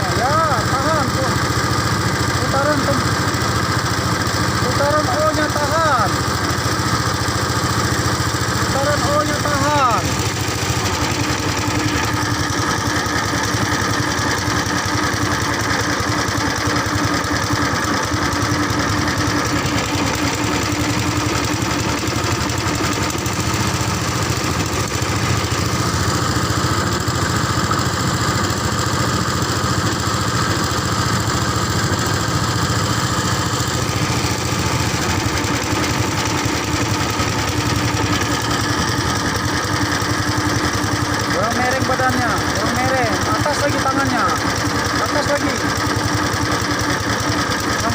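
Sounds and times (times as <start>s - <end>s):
engine droning steadily: 0.0s - 47.9s.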